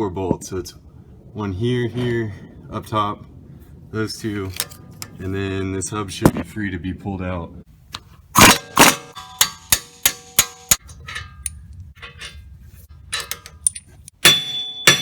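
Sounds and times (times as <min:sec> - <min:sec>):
hammer blows on steel: 0:14.2 - 0:15.0.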